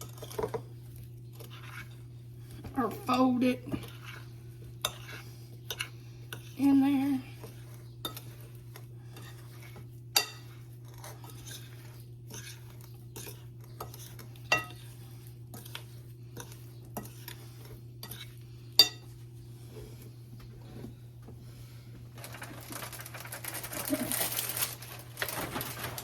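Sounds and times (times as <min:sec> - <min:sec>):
spoon scraping in bowl: 0:00.0 - 0:20.1.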